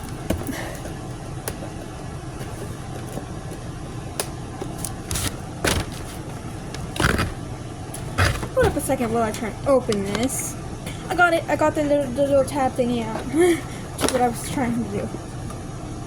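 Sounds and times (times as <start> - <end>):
cardboard box rustling and clicking: 2.4 - 10.3.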